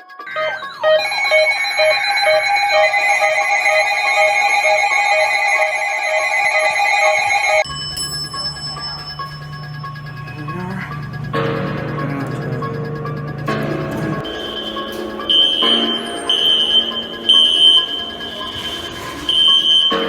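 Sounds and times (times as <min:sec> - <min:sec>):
electronic alarm beeping: 0:00.0 - 0:11.4, 0:13.5 - 0:20.0
held electronic tones: 0:13.9 - 0:20.0.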